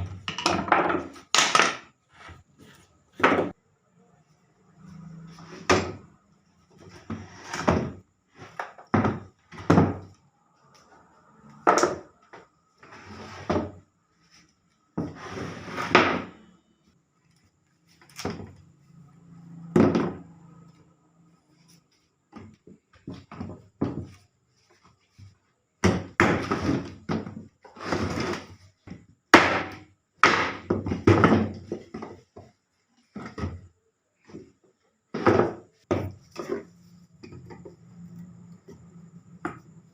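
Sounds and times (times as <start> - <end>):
wooden knocks and thuds: 3.2 - 3.6, 8.6 - 10.1, 19.7 - 20.4, 22.3 - 24.2, 25.8 - 27.5, 28.8 - 33.7, 34.3 - 37.7.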